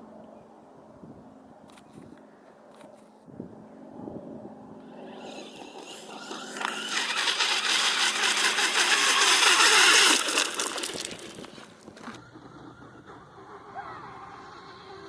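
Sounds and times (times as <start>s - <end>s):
rc truck running across water: 4.9s - 15.0s.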